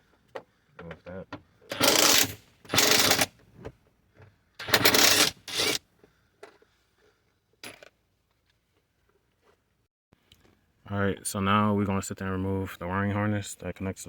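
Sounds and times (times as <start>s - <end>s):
socket wrench ratcheting: 1.7s - 3.3s, 4.6s - 5.8s.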